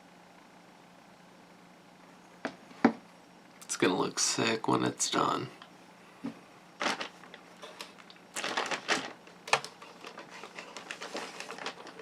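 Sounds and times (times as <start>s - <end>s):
packaging rustling: 6.8s - 12.0s.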